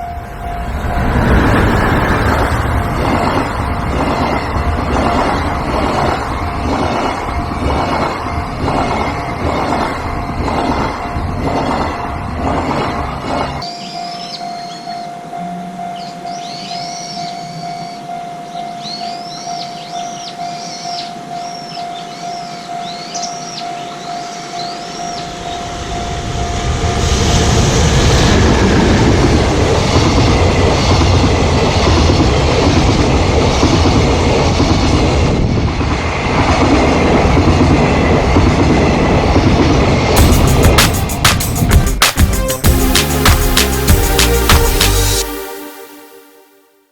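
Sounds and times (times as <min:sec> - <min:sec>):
train wheels rumbling and clacking: 0:00.0 - 0:13.6, 0:25.3 - 0:45.2
birds chirping: 0:13.6 - 0:25.9.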